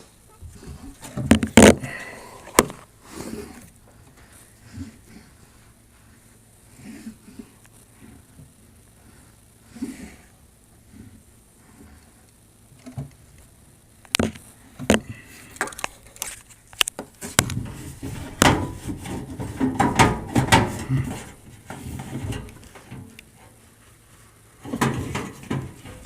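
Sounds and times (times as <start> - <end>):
rattling and scraping: 14.9 - 23.6, 24.6 - 26.0.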